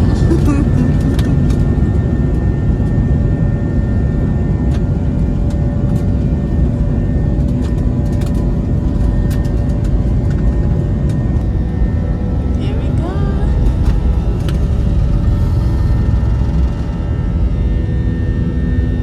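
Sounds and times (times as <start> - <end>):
jet engines rumbling in cabin: 0.0 - 19.0
thin steady whine: 6.8 - 18.6.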